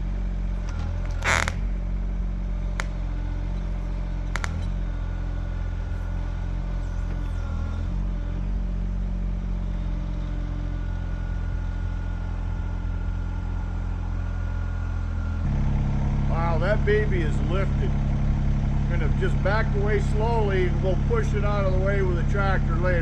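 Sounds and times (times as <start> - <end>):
excavator engine running: 0.0 - 23.0
thin high whine: 0.6 - 1.6.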